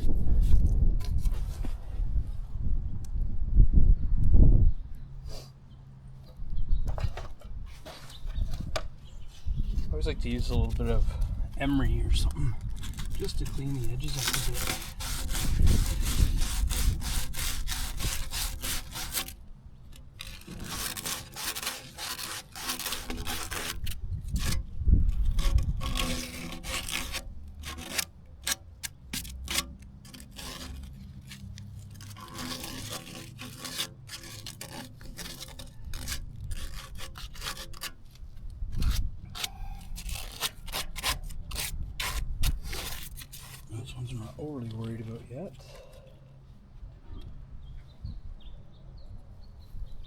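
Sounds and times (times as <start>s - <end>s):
emery cloth scraping pipe edge: 6.9s - 46.3s.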